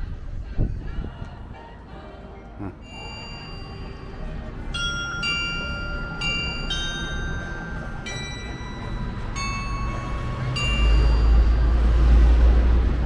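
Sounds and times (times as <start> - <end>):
cuckoo clock bells playing tune: 2.8 - 12.2.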